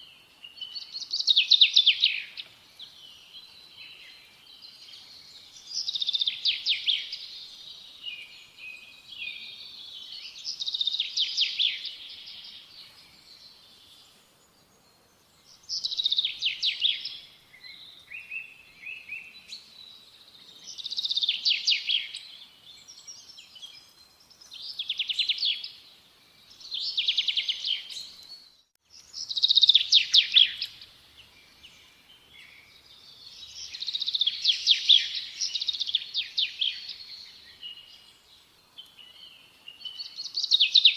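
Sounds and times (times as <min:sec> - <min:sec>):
songbird trilling: 0:15.6 - 0:19.6, 0:29.0 - 0:30.9, 0:33.4 - 0:38.0.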